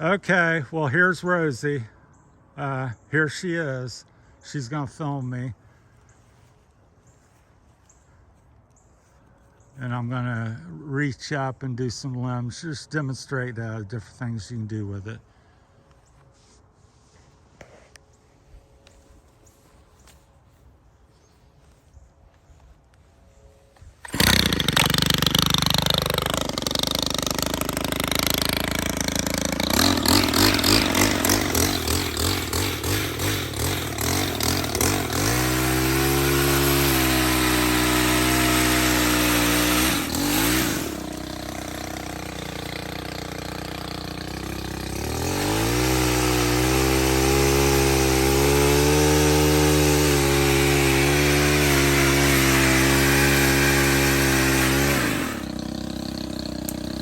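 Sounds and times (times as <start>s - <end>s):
pole saw engine revving: 24.0s - 57.0s.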